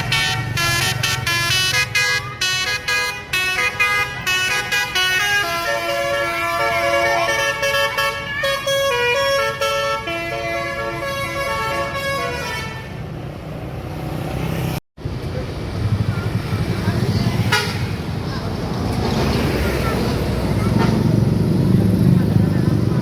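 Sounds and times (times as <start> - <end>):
multi-tone bus horn playing tune: 0.0 - 13.0, 17.5 - 18.0.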